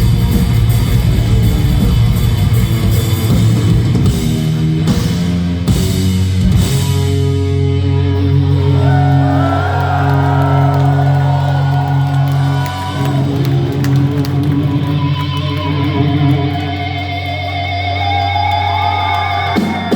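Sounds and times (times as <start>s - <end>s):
distorted electric guitars and bass: 0.0s - 19.9s
drumming: 8.8s - 15.8s.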